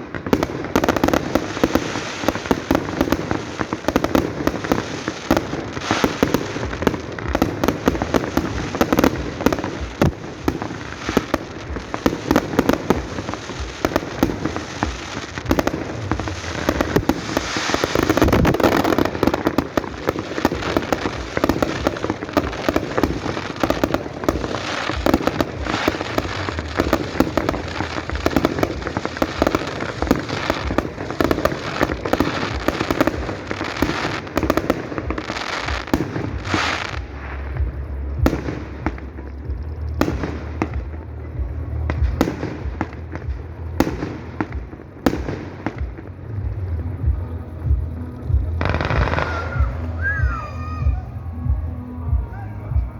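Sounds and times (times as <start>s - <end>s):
fireworks bangs and crackling: 0.0s - 52.9s.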